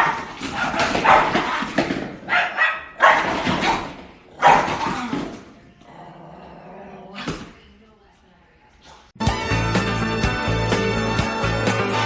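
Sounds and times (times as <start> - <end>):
dog barking angrily: 0.0 - 5.0.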